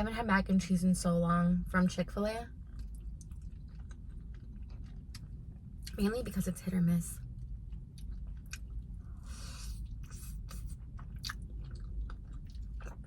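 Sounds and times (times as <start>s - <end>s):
wet chewing mouth clicks: 7.7s - 13.0s.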